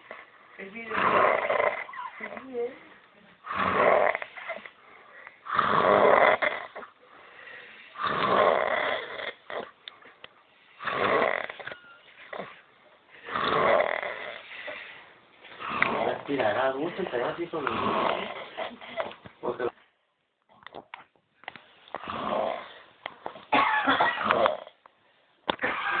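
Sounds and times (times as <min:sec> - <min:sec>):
person snoring: 0:00.8 - 0:02.3, 0:03.5 - 0:09.8, 0:10.7 - 0:11.7, 0:13.2 - 0:19.0, 0:22.0 - 0:22.9.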